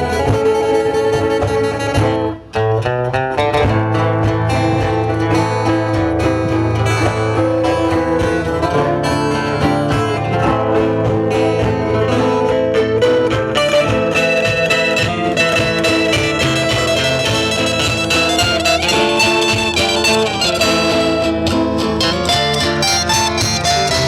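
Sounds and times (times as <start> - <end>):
plucked acoustic guitars: 0.0 - 24.0
bowed fiddle: 13.5 - 24.0.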